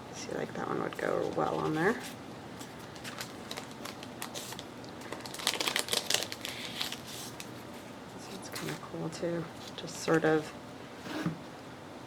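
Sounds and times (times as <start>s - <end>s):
paper crinkling: 0.9s - 7.6s.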